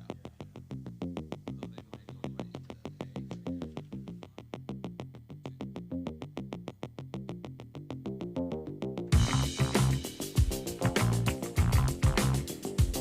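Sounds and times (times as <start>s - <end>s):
electronic intro music: 9.1s - 13.0s.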